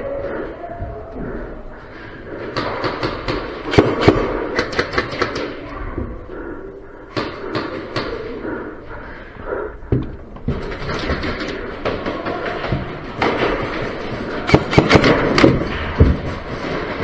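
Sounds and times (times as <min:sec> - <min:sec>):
murmur of voices: 0:00.0 - 0:17.0
airsoft guns firing: 0:02.4 - 0:05.6, 0:07.1 - 0:08.4, 0:10.6 - 0:17.0
pellet impacts: 0:10.5 - 0:17.0.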